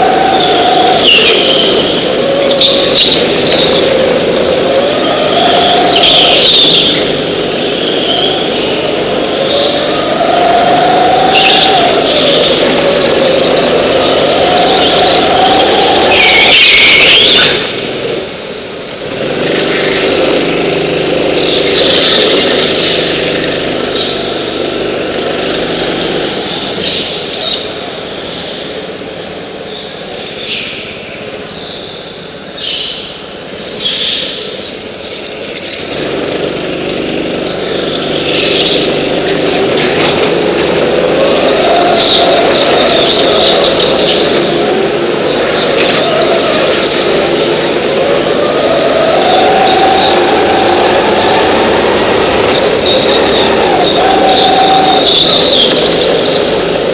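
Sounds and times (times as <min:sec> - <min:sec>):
tyre squeal: 0:00.0 - 0:17.7, 0:36.7 - 0:56.9
go-kart engines running hard: 0:00.0 - 0:56.9.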